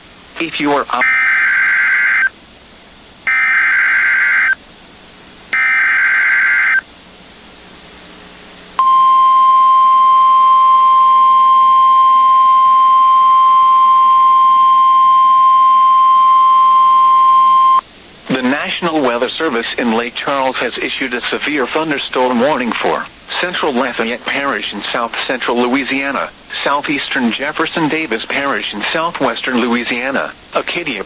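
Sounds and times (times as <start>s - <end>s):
steady warning alarm tone: 1.0s - 2.3s, 3.3s - 4.6s, 5.6s - 6.8s, 8.8s - 17.8s.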